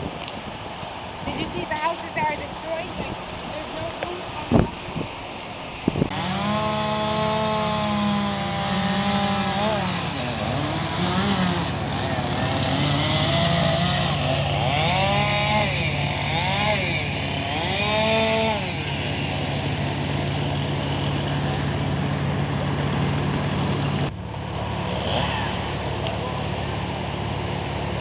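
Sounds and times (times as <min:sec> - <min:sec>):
small engine revving: 0:06.0 - 0:26.4.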